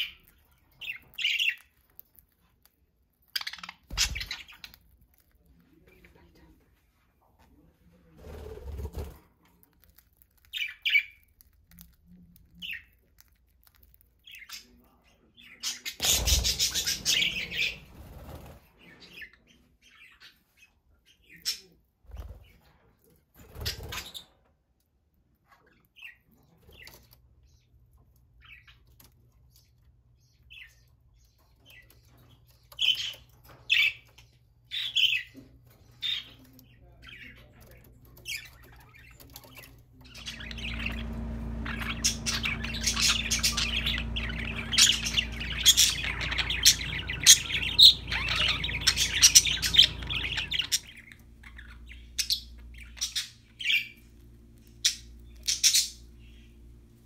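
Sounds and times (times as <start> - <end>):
faint low hum: 0.0 - 57.0
wings flapping: 8.2 - 9.3, 16.0 - 18.7
budgerigars chirping: 14.2 - 18.2, 37.0 - 56.6.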